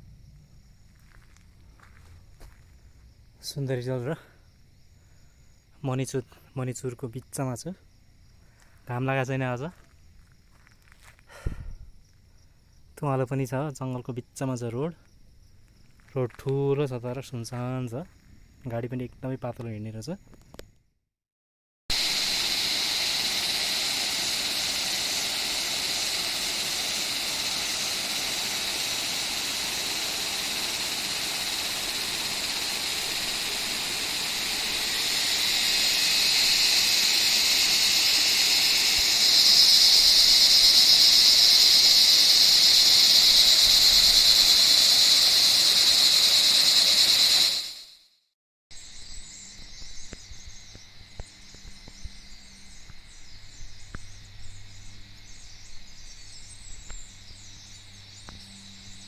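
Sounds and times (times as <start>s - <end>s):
cicada chorus drone: 0.0s - 20.6s, 21.9s - 48.1s, 48.7s - 59.0s
faint outdoor ambience: 0.0s - 20.7s, 48.7s - 59.0s.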